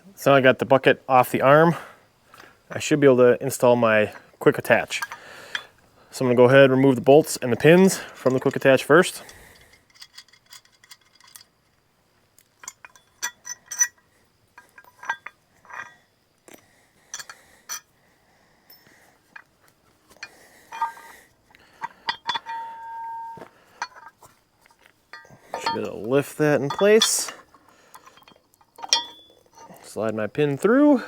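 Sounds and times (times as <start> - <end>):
metal pins clinking: 4.5 - 5.8, 7.3 - 17.9, 18.7 - 31.0
metal piece ringing: 20.2 - 21.2, 21.8 - 24.1, 25.1 - 29.7.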